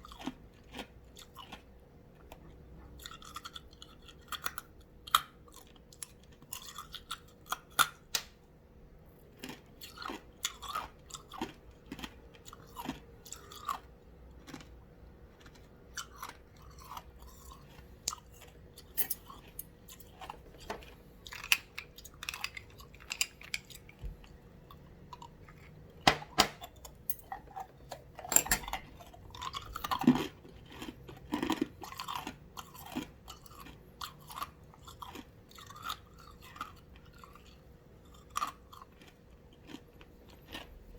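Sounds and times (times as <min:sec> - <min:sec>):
ice cubes crunching: 0:14.4 - 0:14.7, 0:15.4 - 0:24.0, 0:28.4 - 0:40.7.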